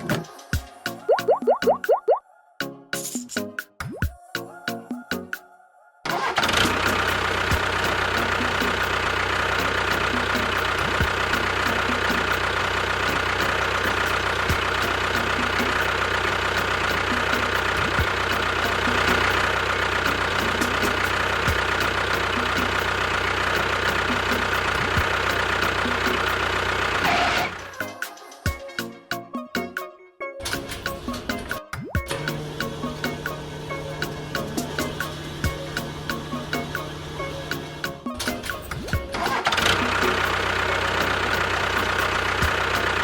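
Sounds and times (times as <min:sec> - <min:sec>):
engine running steadily: 0:06.2 - 0:27.8, 0:32.2 - 0:43.0.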